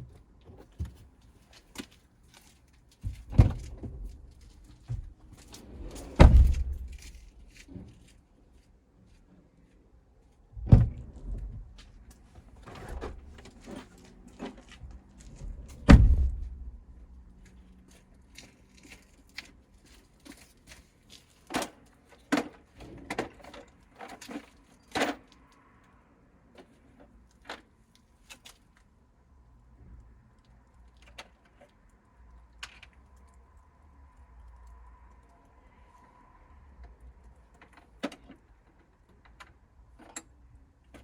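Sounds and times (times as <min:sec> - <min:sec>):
heavy thumps: 0:03.0 - 0:07.2, 0:15.3 - 0:16.9.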